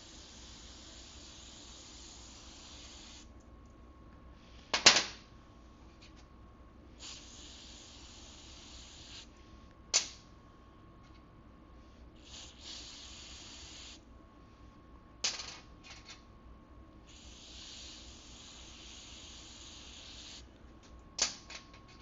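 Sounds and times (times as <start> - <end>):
aerosol spray hissing: 0.0 - 3.3, 7.0 - 9.3, 12.2 - 14.0, 17.1 - 20.4.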